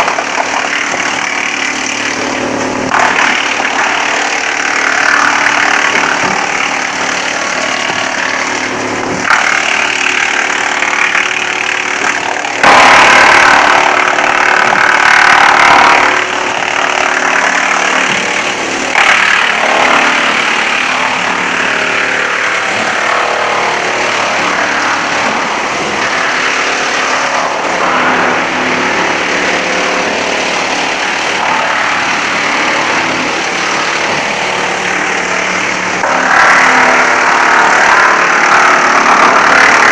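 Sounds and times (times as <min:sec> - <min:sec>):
wood chipper chipping wood: 0:00.0 - 0:39.9.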